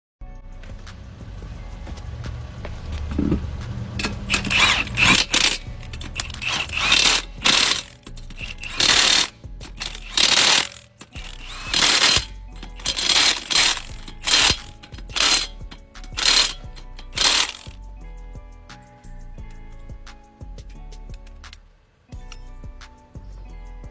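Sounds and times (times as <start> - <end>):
background music: 0.2 - 23.9
impact gun bursts: 4.0 - 17.8.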